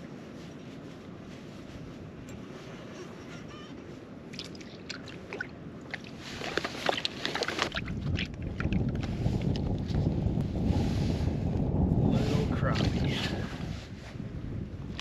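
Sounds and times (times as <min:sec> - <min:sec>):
wind buffeting microphone: 0:00.0 - 0:15.0
small clicks and crackles: 0:06.2 - 0:10.0.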